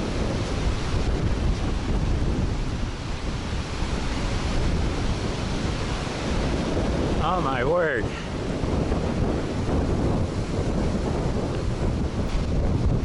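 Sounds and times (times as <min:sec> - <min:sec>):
gusting wind on microphone: 0:00.0 - 0:13.0.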